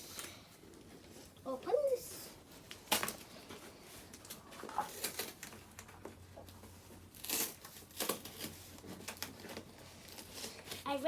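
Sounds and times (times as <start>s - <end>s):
packaging crinkling and tearing: 2.6s - 10.9s.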